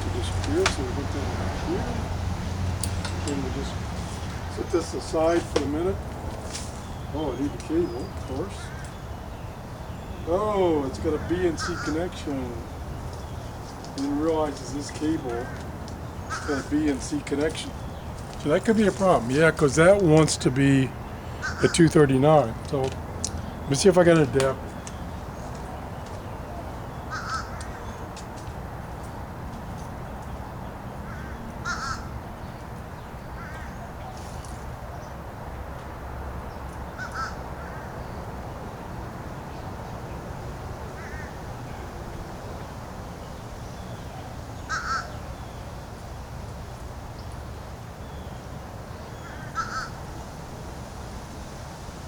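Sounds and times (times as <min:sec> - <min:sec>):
crow cawing: 0:08.6 - 0:09.0, 0:11.1 - 0:12.2, 0:15.4 - 0:16.7, 0:21.3 - 0:21.9, 0:27.0 - 0:28.0, 0:31.1 - 0:32.2, 0:33.4 - 0:33.9, 0:37.0 - 0:38.0, 0:41.0 - 0:41.4, 0:44.6 - 0:45.2, 0:49.2 - 0:50.0.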